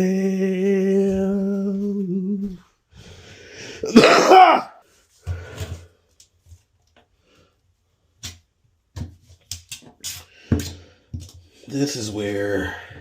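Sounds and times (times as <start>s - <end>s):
throat clearing: 3.9s - 4.8s.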